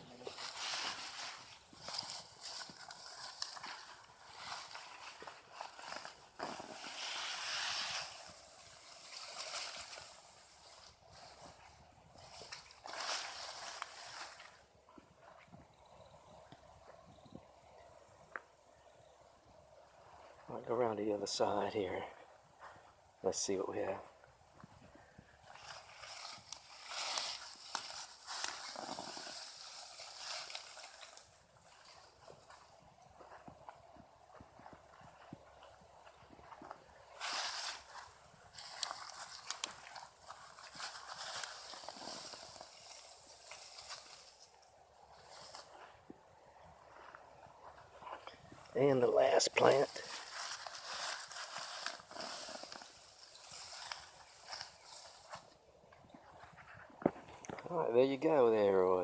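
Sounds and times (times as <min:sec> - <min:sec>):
soil and foliage rustling: 0:00.0 - 0:59.0.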